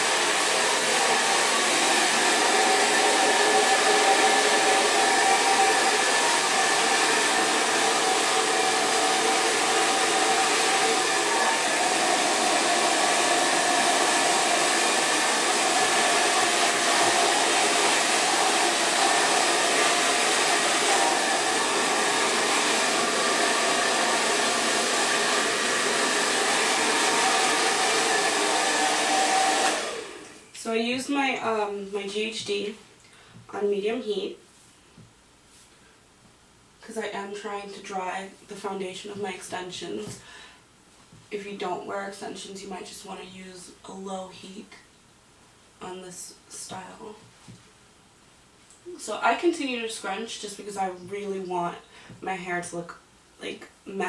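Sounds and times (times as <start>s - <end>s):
hair dryer running: 0.0s - 30.4s.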